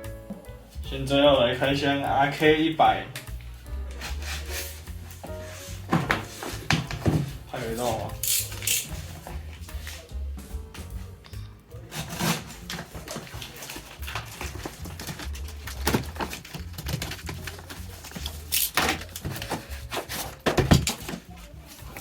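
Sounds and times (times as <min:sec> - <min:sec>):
background music with low beat: 0:00.0 - 0:22.0
packaging rustling and clicking: 0:11.9 - 0:22.0.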